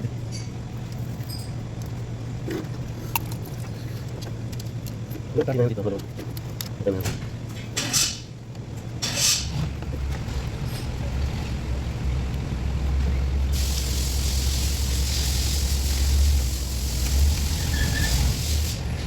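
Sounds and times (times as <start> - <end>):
loud hiss: 13.5 - 19.0.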